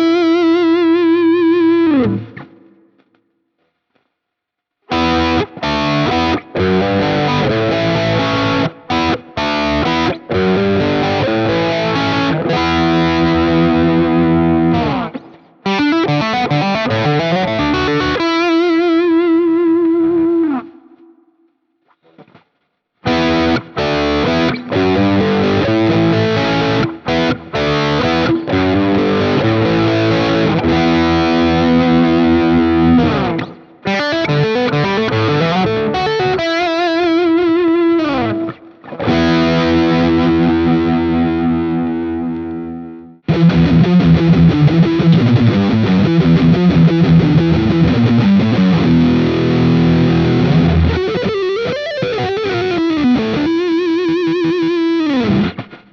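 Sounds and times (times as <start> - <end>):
overdriven electric guitar: 0.0 - 3.3, 4.8 - 21.6, 23.0 - 55.9.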